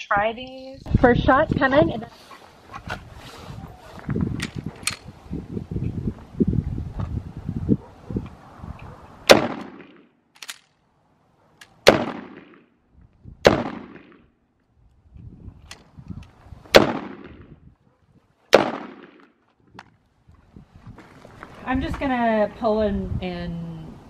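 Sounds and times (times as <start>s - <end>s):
pistol shots: 9.3s - 10.6s, 11.7s - 12.7s, 13.4s - 14.3s, 16.7s - 17.5s, 18.5s - 19.4s.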